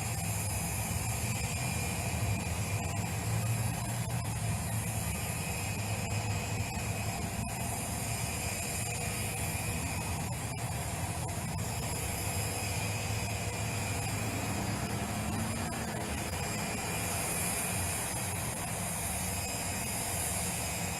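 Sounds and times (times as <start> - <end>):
jet engines running: 0.0 - 20.9.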